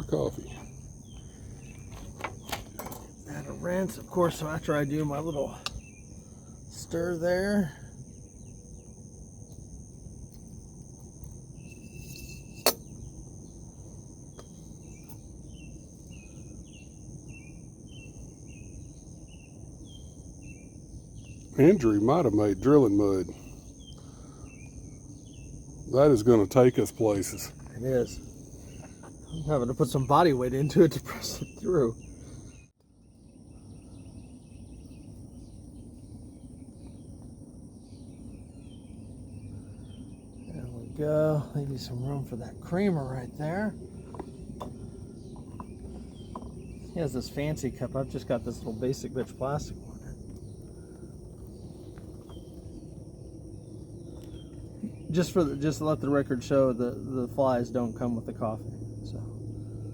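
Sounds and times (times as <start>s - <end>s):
bird chirping: 0.0s - 9.7s, 11.5s - 37.2s, 37.8s - 59.9s
insects droning: 0.0s - 59.9s
low background rumble: 33.5s - 59.9s.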